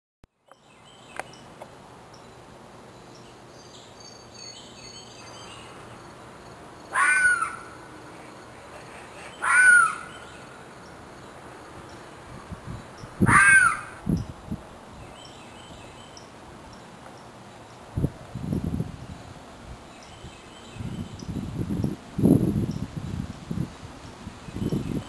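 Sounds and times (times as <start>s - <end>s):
loud animal call: 6.9s - 10.3s, 13.2s - 14.0s.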